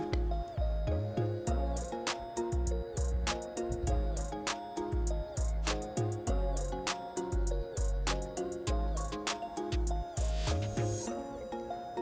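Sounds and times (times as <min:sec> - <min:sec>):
background music with bass beat: 0:00.0 - 0:11.7.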